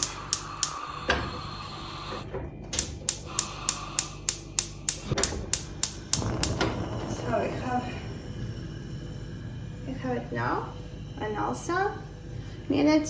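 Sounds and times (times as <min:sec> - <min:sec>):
gas stove igniter clicking: 0:00.0 - 0:07.4
faint steady hum: 0:00.0 - 0:13.0.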